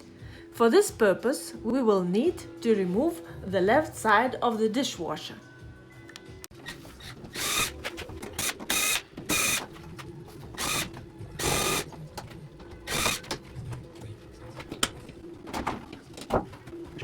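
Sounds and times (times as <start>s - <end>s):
cordless screwdriver whirring: 6.6s - 9.7s, 10.6s - 11.9s, 12.9s - 13.4s.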